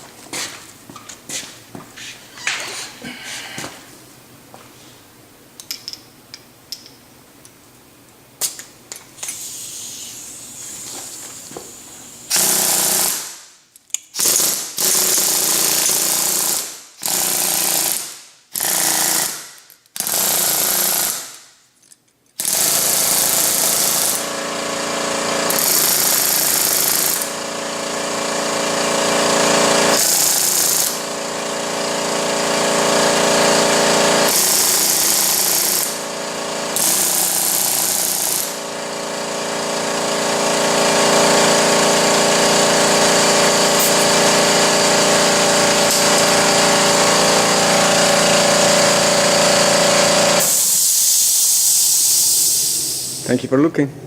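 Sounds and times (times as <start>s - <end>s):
pneumatic rivet gun hammering: 8.4s - 10.3s, 12.3s - 21.6s, 22.3s - 53.2s.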